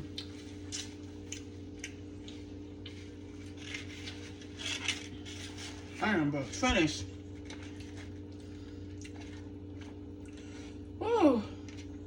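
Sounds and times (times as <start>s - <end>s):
person chewing food: 0.0s - 5.9s, 7.4s - 10.9s
steady low hum: 0.0s - 12.0s.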